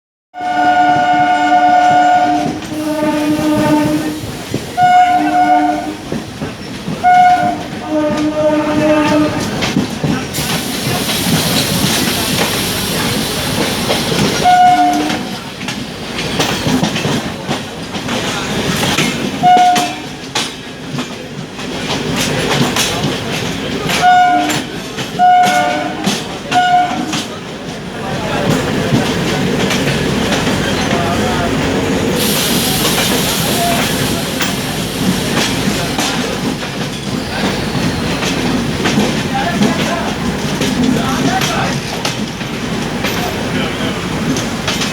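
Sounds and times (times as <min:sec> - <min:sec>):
train horn long and short blasts: 0:00.4 - 0:06.0, 0:07.0 - 0:09.6, 0:14.4 - 0:15.3, 0:19.4 - 0:20.1, 0:24.0 - 0:27.2
trains rumbling: 0:00.4 - 0:44.9.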